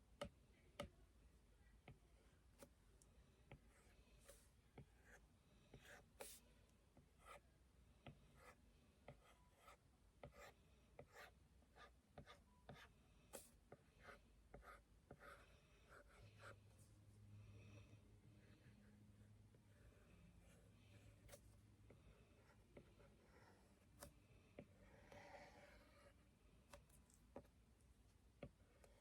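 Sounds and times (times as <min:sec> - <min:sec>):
pen scratching on a surface: 0:03.6 - 0:06.4, 0:08.3 - 0:16.6, 0:19.7 - 0:27.5.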